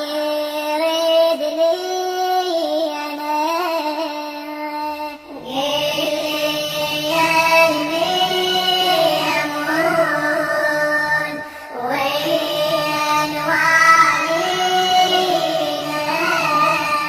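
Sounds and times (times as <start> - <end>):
high pitch-raised singing voice: 5.1 - 17.0.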